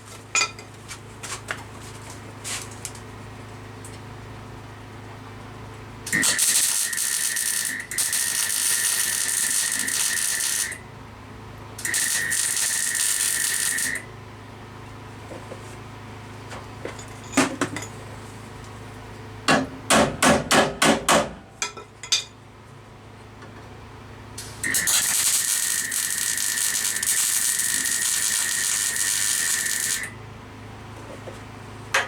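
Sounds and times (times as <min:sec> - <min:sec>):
hammer striking steel: 0:19.5 - 0:22.3.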